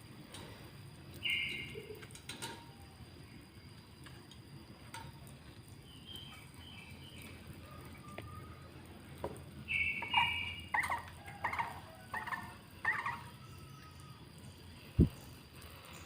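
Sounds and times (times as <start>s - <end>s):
faint scattered clicks: 0.2s - 2.7s, 3.7s - 11.7s.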